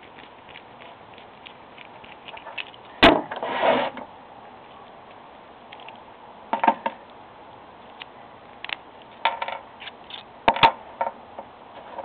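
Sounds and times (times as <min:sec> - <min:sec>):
small metal lock parts clicking: 0:09.8 - 0:10.3.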